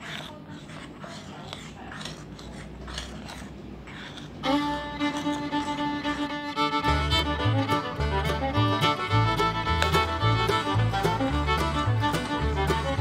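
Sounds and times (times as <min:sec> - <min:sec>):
fiddle tune: 0:04.4 - 0:13.0
bass line: 0:06.1 - 0:13.0.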